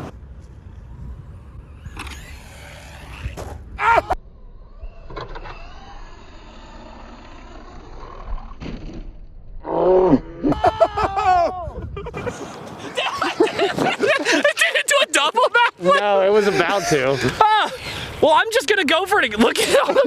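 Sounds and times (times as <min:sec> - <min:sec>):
rc truck electric motor whining: 0:00.8 - 0:09.1
person shouting: 0:03.8 - 0:04.2, 0:10.5 - 0:11.8.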